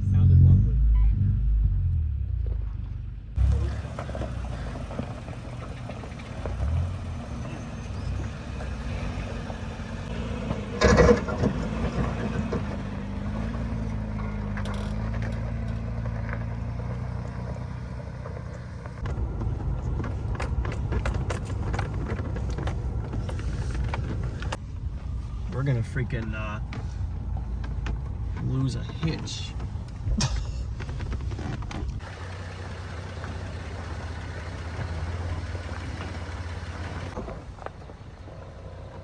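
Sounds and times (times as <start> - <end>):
off-road vehicle engine running: 0.0 - 39.0
sharp clicks and knocks: 18.9 - 24.6.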